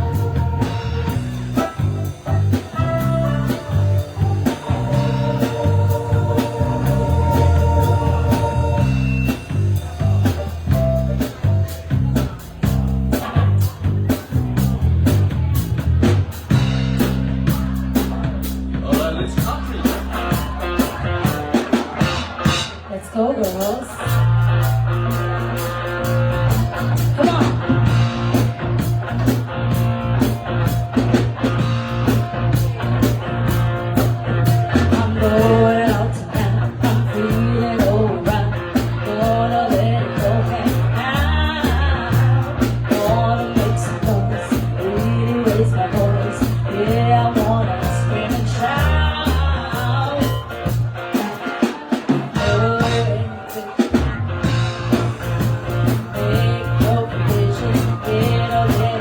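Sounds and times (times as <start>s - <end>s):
lead melody with bent notes: 0.0s - 22.9s
bass line: 0.0s - 51.4s, 52.0s - 59.0s
drums: 0.0s - 59.0s
guitar: 0.0s - 59.0s.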